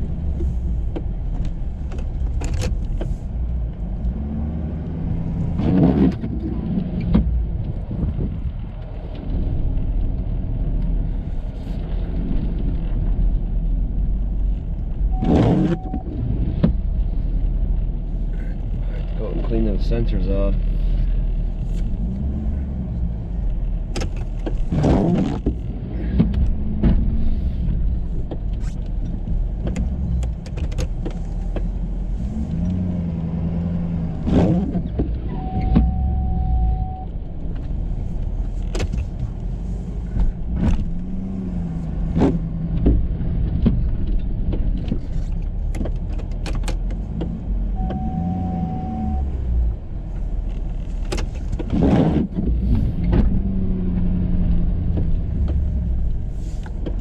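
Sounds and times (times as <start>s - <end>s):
steady beep: 35.3s - 37.1s, 47.8s - 49.3s.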